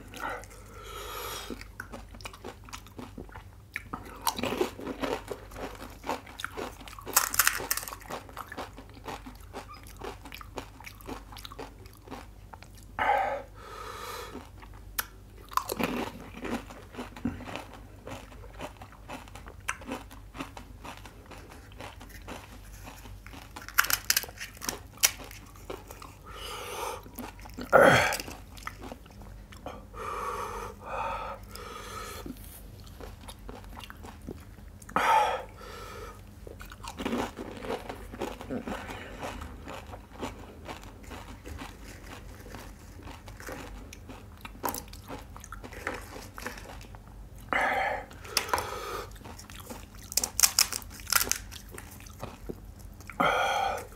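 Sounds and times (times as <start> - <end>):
crisp shells crunching: 4.4 - 12.2, 15.6 - 26.1, 49.2 - 52.5
wet chewing: 27.0 - 29.8, 31.3 - 35.0, 36.4 - 47.5, 48.1 - 53.9.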